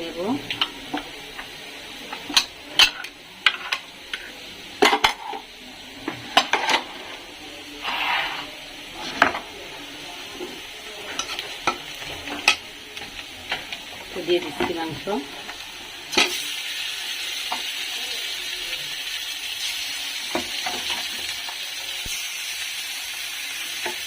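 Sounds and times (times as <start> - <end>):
onions sizzling in oil: 0.0 - 24.0
spoon scraping a pan: 2.2 - 7.2, 7.8 - 9.5, 10.4 - 13.7.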